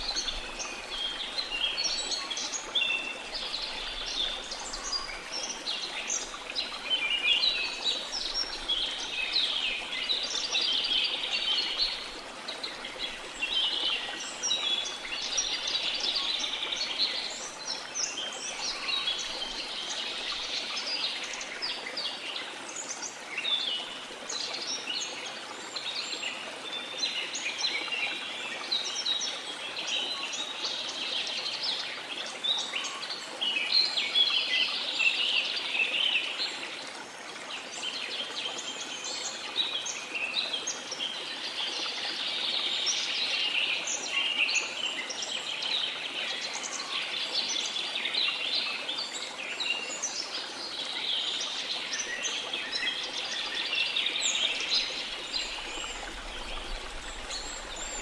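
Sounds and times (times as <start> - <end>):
songbirds chirping: 0.0 - 58.0.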